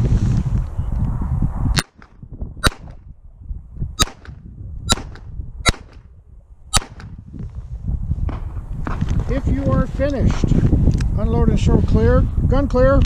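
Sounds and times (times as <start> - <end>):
steady low rumble: 0.0 - 12.7
pistol shots: 4.0 - 4.3, 4.9 - 6.0, 6.8 - 7.1.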